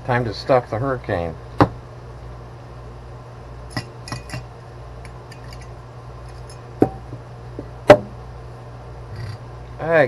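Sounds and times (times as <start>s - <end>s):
clinks and taps on glass: 3.7s - 4.4s
sharp knock on glass: 7.9s - 8.2s.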